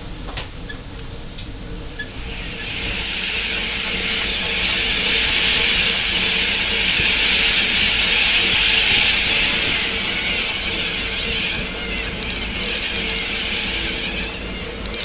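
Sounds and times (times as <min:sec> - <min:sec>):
steam hissing: 0:01.9 - 0:15.0.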